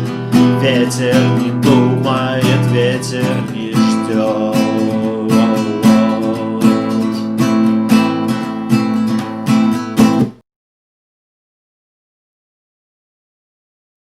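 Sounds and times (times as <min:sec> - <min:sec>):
acoustic guitar strumming: 0:00.0 - 0:10.4.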